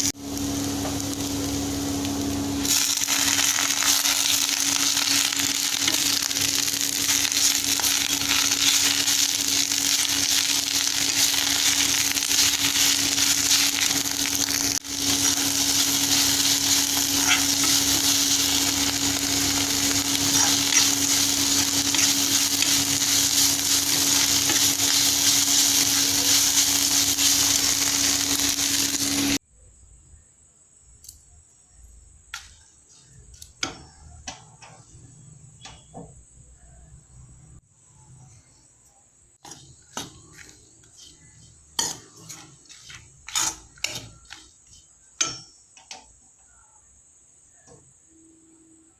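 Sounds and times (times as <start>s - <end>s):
electric mixer grinder running: 0.0s - 29.4s.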